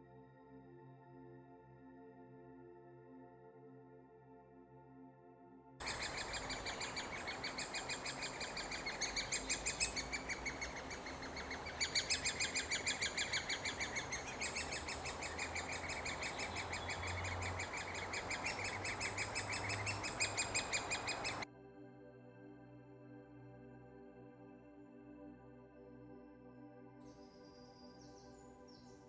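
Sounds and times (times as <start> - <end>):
woodpecker chicks begging calls: 5.8 - 21.4.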